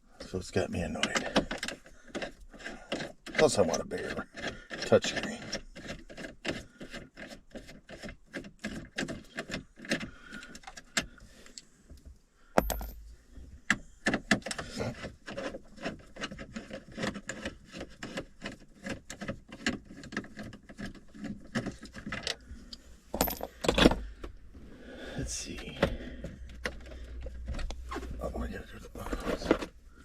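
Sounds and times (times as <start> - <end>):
hand tools clicking and rattling: 23.1 - 24.1.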